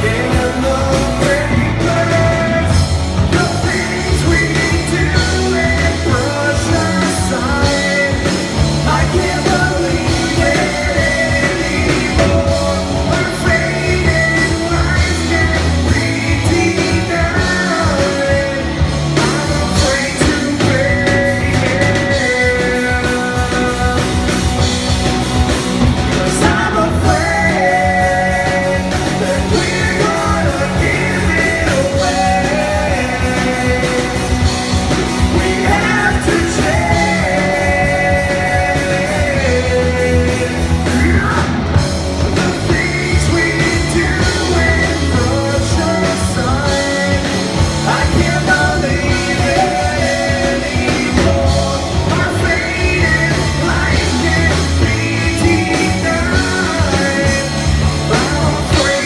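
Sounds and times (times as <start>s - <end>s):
live rock band playing: 0.0s - 59.0s
person singing: 0.0s - 59.0s.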